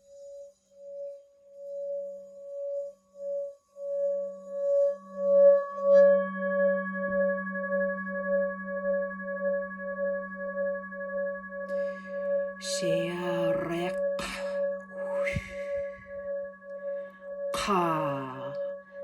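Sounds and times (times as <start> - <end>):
singing bowl ringing: 0.0 - 19.0
low hum: 11.7 - 16.4.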